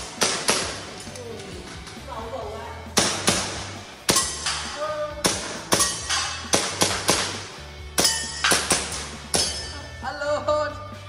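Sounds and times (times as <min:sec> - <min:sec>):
background music: 0:00.0 - 0:11.0
steel targets ringing: 0:04.1 - 0:04.8, 0:05.7 - 0:06.5, 0:08.0 - 0:09.9
airsoft pistol shots: 0:05.2 - 0:07.4.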